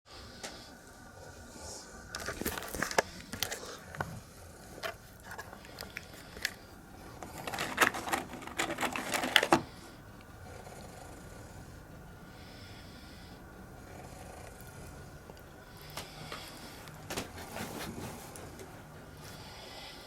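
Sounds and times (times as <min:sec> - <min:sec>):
paper cup being handled: 0:02.2 - 0:09.8
crunching of snack sticks: 0:04.8 - 0:09.7.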